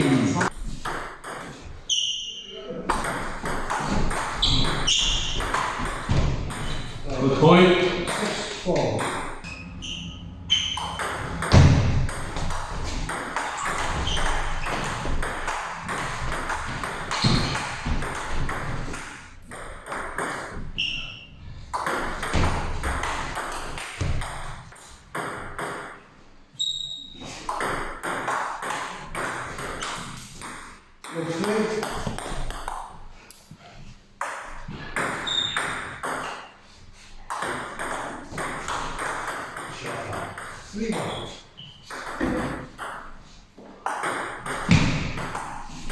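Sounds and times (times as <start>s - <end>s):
ball bouncing on table: 2.9s - 7.0s, 7.9s - 20.7s, 21.7s - 26.0s, 37.3s - 41.2s, 41.9s - 43.1s, 43.9s - 45.9s
ping pong ball clicking off bats: 2.9s - 7.0s, 10.5s - 20.6s, 27.5s - 33.0s, 37.3s - 41.2s, 43.8s - 45.9s.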